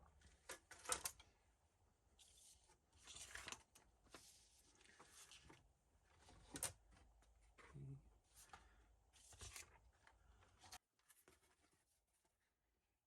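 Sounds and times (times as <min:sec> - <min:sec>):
paper scraping and rustling: 0:08.4 - 0:11.9.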